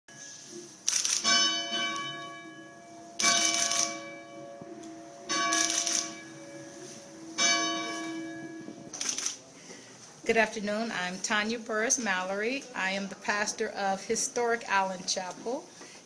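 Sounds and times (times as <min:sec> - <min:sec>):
church bell ringing: 0:00.1 - 0:00.6, 0:01.2 - 0:09.0.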